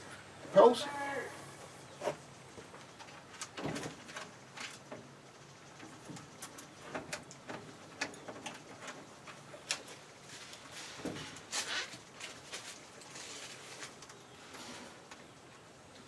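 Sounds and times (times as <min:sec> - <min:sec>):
plastic straps clicking and rasping: 0:05.7 - 0:14.2.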